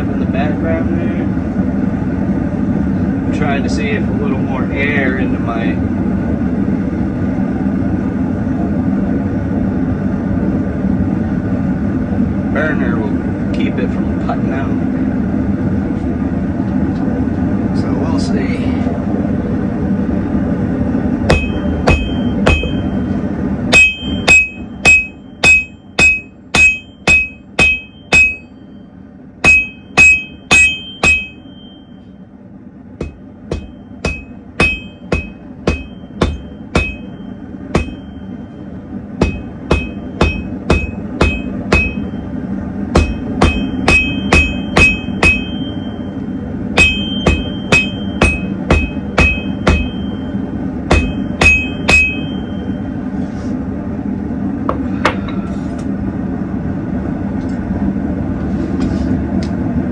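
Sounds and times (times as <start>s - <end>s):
forge burner roaring: 0.0s - 59.9s
hammer striking hot steel: 21.3s - 23.1s, 23.7s - 28.7s, 29.4s - 32.1s, 33.0s - 38.6s, 39.2s - 52.8s.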